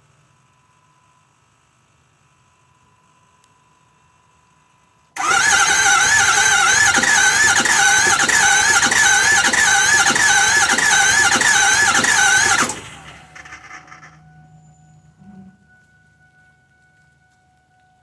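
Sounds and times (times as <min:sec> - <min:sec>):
starter motor cranking engine: 0:05.2 - 0:14.2.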